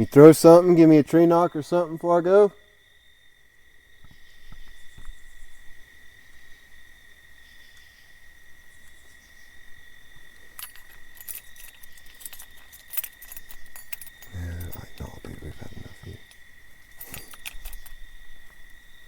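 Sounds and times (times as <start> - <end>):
night insects chirring: 0.0 - 19.0
rattle of clicks: 10.4 - 18.1.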